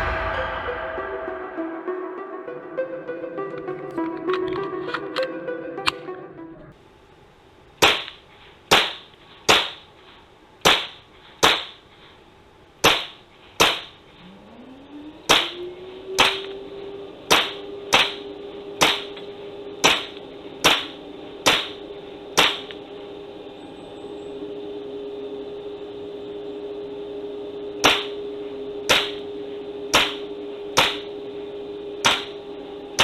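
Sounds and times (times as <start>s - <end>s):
steady hum rising in pitch: 0.0s - 6.8s, 14.1s - 33.0s
toy dart blaster shots: 15.3s - 15.6s, 16.2s - 16.5s, 17.3s - 18.2s, 18.8s - 19.1s, 19.8s - 21.8s, 22.4s - 22.7s, 27.8s - 28.2s, 28.9s - 29.2s, 29.9s - 30.2s, 30.8s - 31.1s, 32.0s - 32.4s.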